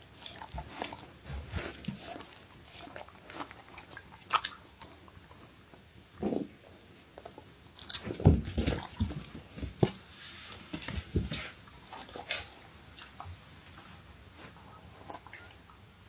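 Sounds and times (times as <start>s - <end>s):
dog crunching an apple: 0.0s - 9.9s.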